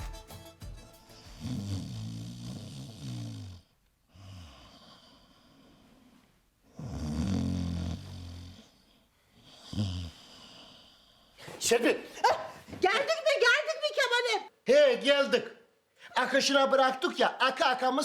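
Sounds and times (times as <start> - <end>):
man snoring heavily: 1.4 - 5.6, 6.7 - 8.8, 9.4 - 11.0.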